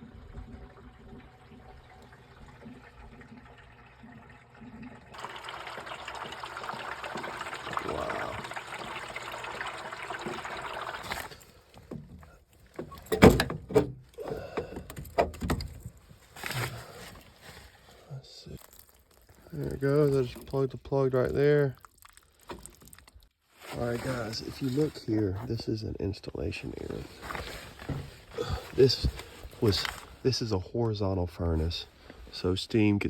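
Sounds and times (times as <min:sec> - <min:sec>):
water pouring from drain: 0:00.0 - 0:12.0, 0:21.4 - 0:23.3.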